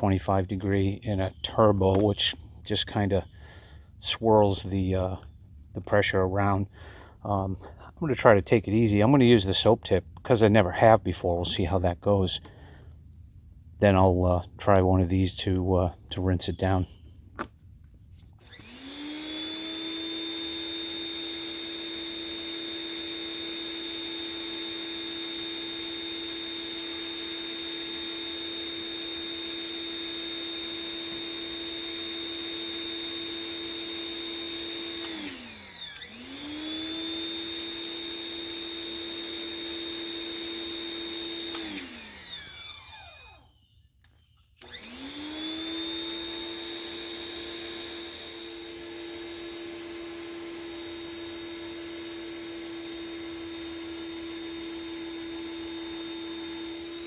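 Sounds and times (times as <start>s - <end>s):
pressure washer motor whining: 0.0s - 3.2s, 18.4s - 43.6s, 44.5s - 57.0s.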